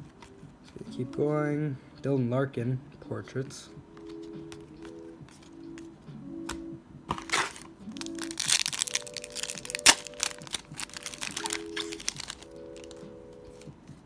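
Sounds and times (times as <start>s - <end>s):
soft background music: 0.0s - 14.0s
plastic wrapper crinkling and tearing: 7.1s - 13.0s.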